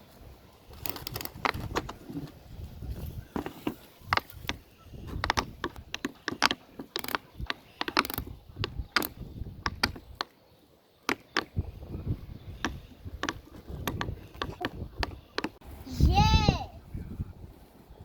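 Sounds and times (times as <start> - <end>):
fidget toys clicking and popping: 5.2 - 10.3.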